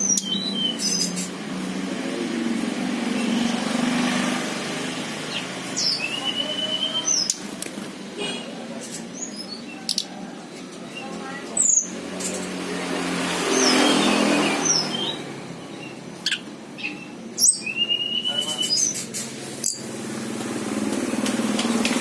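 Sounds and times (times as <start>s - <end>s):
songbird chirping: 0.0s - 1.4s, 2.6s - 7.7s, 8.8s - 19.9s.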